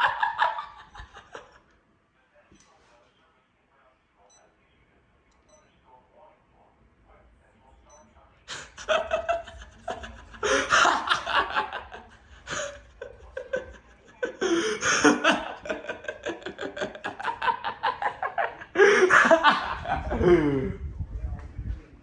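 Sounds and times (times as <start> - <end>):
person laughing hard: 8.6 - 20.8.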